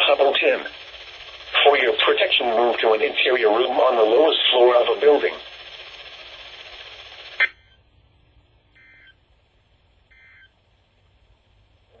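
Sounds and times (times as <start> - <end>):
radio hiss: 0.0 - 7.6
warbling data tones: 10.1 - 10.5.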